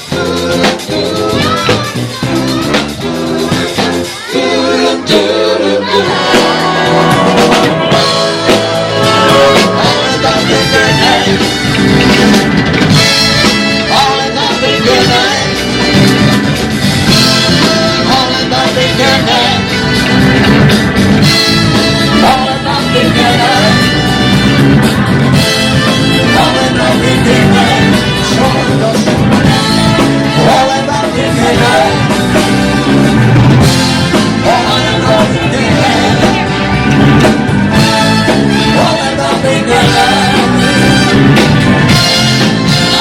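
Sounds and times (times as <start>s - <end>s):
person singing: 0.0s - 12.1s, 13.4s - 16.4s, 17.1s - 20.0s, 21.7s - 24.4s, 25.4s - 32.6s, 34.1s - 36.8s, 38.3s - 41.0s
live band playing dance music: 0.0s - 43.0s.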